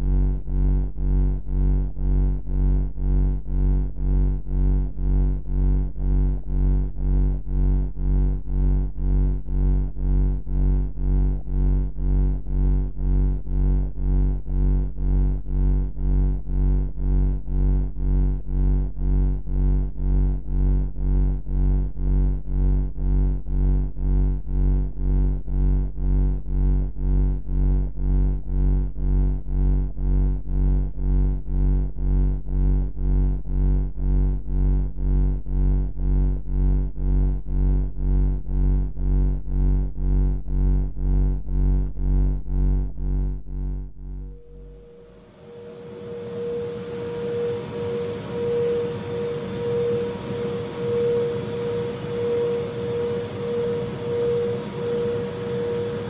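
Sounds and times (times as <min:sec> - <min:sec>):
pulsing electronic drone: 0:44.1 - 0:56.0.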